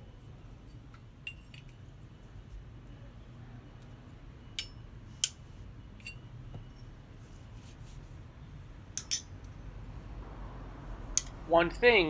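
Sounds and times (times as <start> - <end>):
metal tongs clinking: 9.0 - 9.5.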